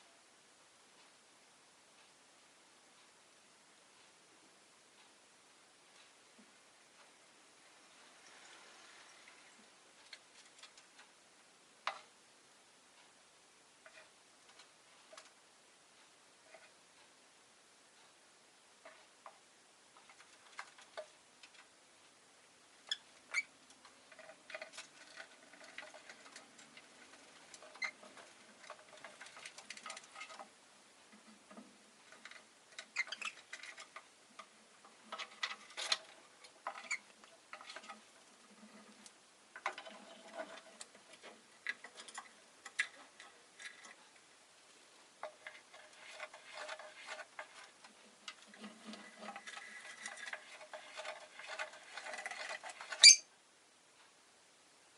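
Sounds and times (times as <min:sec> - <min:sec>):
small clicks and ticks: 0:08.0 - 0:11.2, 0:13.8 - 0:17.2, 0:18.8 - 0:44.3, 0:45.1 - 0:53.1
lovebirds chattering softly: 0:53.0 - 0:53.3.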